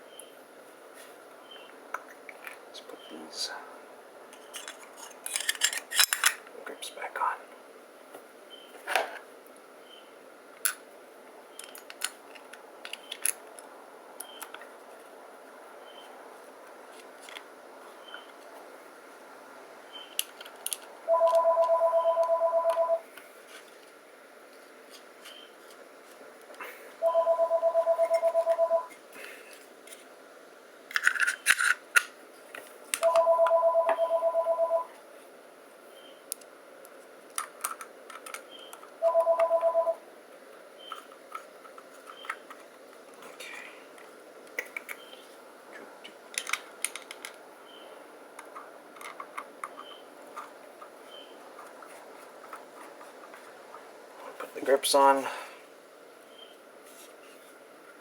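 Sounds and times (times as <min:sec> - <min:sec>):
telephone ringing: 0:21.1 - 0:23.1, 0:27.0 - 0:28.9, 0:33.0 - 0:35.0, 0:39.0 - 0:40.0.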